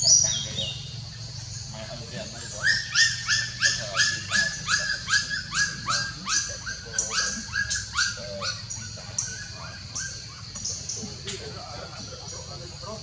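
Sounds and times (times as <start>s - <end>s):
puppies yelping: 2.5s - 10.6s.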